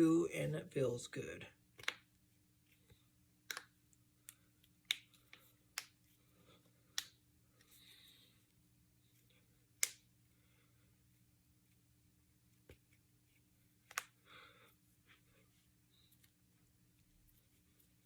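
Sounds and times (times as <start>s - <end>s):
knuckles cracking: 1.8s - 2.1s, 2.9s - 6.1s, 6.8s - 7.7s, 9.8s - 10.1s, 13.8s - 14.2s.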